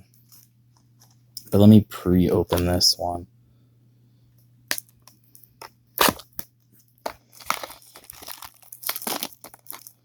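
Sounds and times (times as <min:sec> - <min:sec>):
cardboard cracking and snapping: 0:06.0 - 0:06.4, 0:07.1 - 0:10.0
cardboard crackling and rustling: 0:07.1 - 0:10.0.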